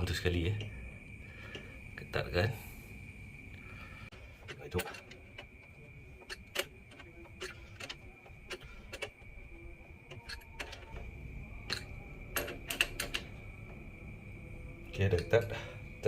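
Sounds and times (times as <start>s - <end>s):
spanner clicking against metal nut: 4.5s - 13.3s.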